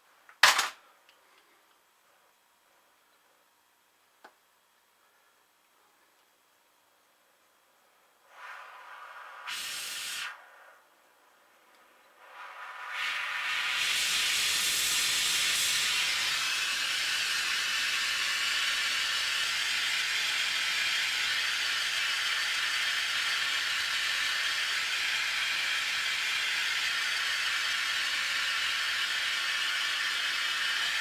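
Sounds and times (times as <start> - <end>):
torch flame hissing: 8.3 - 10.8, 12.2 - 31.0.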